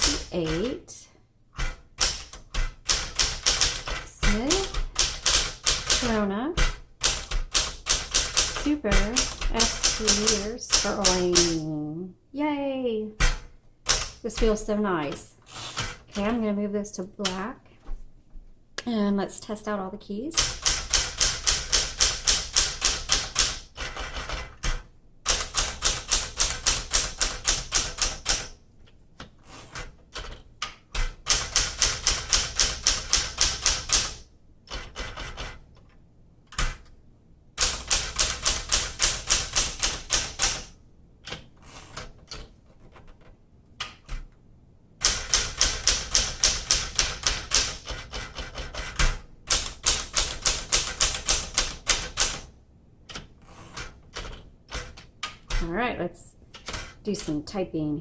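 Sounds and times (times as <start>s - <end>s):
typewriter keys striking: 0.0s - 0.8s, 1.6s - 11.7s, 13.2s - 14.7s, 20.4s - 28.6s, 29.6s - 35.9s, 37.6s - 44.2s, 45.0s - 52.5s
typewriter mechanism clicks: 1.6s - 11.6s, 37.6s - 44.2s, 45.0s - 52.5s.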